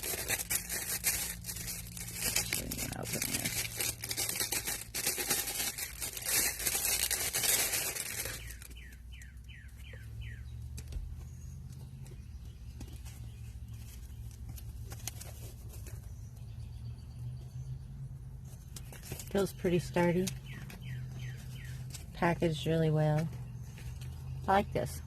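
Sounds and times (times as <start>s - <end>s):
packaging tearing and crinkling: 0.0s - 9.0s.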